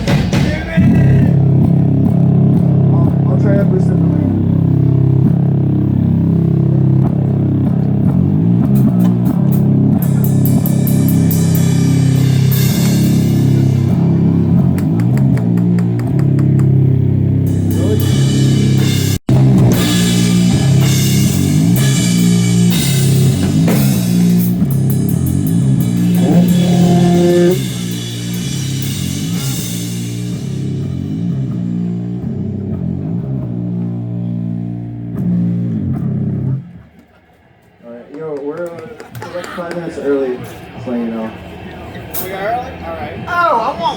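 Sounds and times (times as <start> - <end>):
bass guitar: 0.0 - 37.0
drums: 0.0 - 43.9
distorted electric guitar: 0.6 - 36.9
crashing cymbals: 10.0 - 14.7, 17.5 - 32.3.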